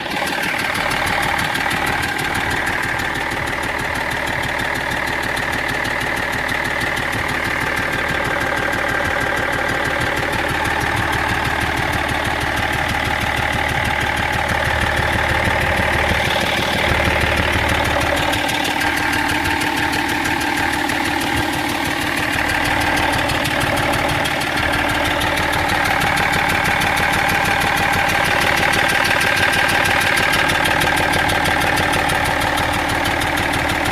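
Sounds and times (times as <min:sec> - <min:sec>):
diesel engine idling: 0:00.0 - 0:33.9.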